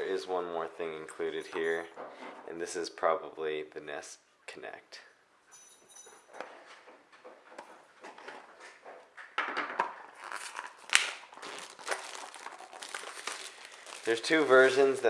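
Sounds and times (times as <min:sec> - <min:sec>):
packaging rustling and crinkling: 0:09.8 - 0:15.0.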